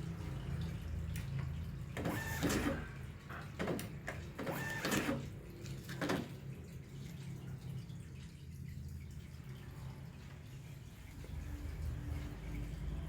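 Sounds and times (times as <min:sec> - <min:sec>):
ticket printer bursts: 0:02.0 - 0:02.9, 0:04.4 - 0:05.2.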